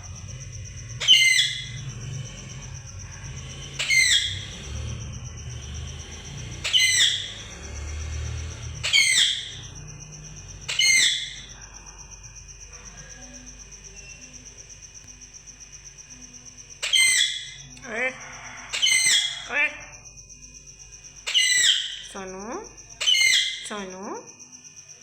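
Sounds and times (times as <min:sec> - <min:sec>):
parrot calling shrilly: 0:16.8 - 0:20.0, 0:21.3 - 0:22.0.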